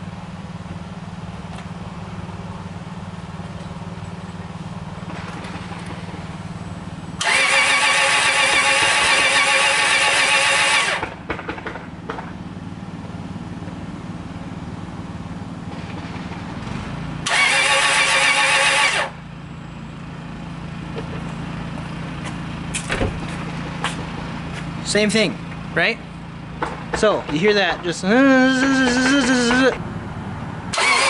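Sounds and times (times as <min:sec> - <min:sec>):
starter cranking engine: 0:07.2 - 0:11.8, 0:16.6 - 0:19.2, 0:27.0 - 0:29.8, 0:30.7 - 0:31.0.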